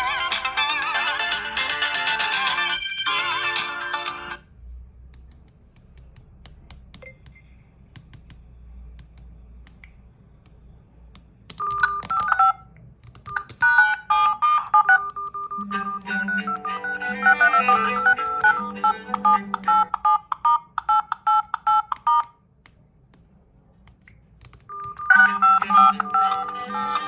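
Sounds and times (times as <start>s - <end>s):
smartphone ringtone melody: 0.0s - 4.4s, 15.5s - 20.2s, 24.7s - 27.0s
faint clicks and taps: 5.1s - 13.7s, 14.7s - 27.0s.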